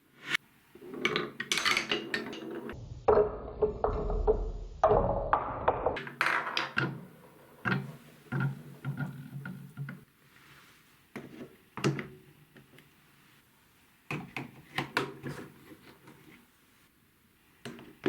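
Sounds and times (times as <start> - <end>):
low rumble: 2.8 - 6.0.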